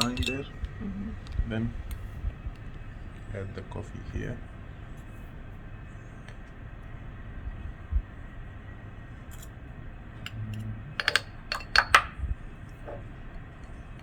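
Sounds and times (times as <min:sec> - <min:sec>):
spoon clinking on metal coffee pot: 0:00.0 - 0:00.7, 0:11.0 - 0:12.2.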